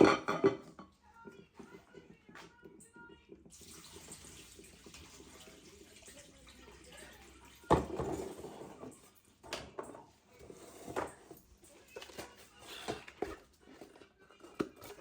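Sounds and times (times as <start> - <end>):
dish clunking down: 0.0 - 0.8, 7.7 - 8.8
tap water running into sink: 3.5 - 9.0.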